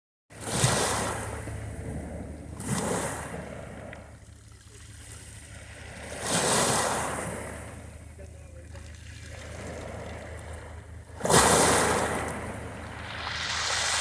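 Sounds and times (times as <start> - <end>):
sea waves washing onto beach: 8.7 - 14.0.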